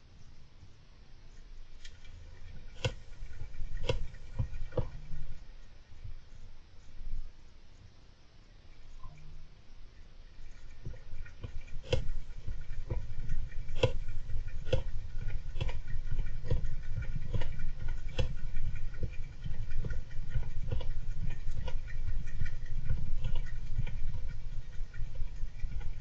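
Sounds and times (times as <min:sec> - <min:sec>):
hamster clicking in cage: 0:01.8 - 0:05.4, 0:10.4 - 0:26.0.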